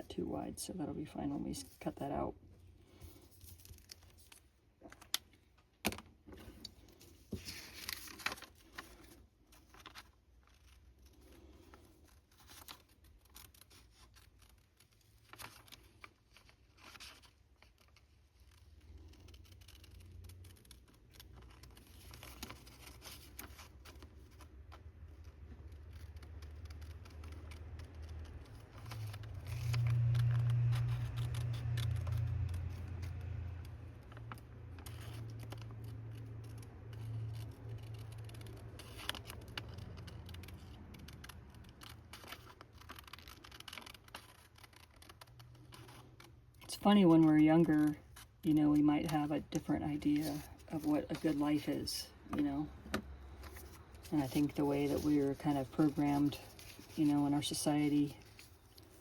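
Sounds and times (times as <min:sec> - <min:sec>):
paper rustling: 0:02.8 - 0:05.2, 0:05.9 - 0:59.0
scissors cutting paper: 0:25.2 - 0:46.3
low steady hum: 0:45.4 - 0:59.0.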